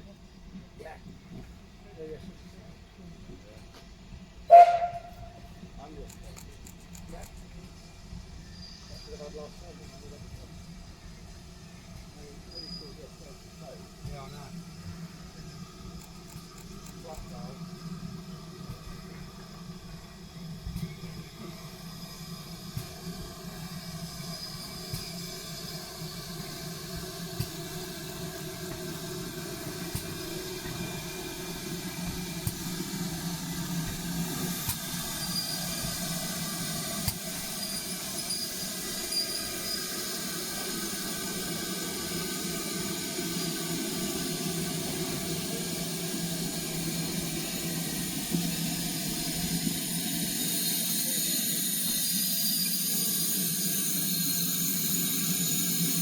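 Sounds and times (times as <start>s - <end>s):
steam locomotive hissing steam: 0.0s - 56.0s.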